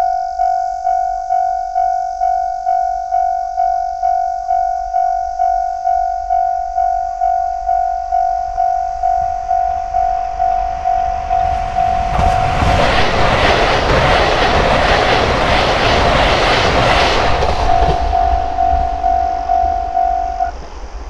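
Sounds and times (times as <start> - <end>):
level crossing warning bell: 0.0 - 12.6, 17.8 - 20.6
diesel train passing: 8.5 - 21.0
wheels clattering over rail joints: 11.1 - 19.2.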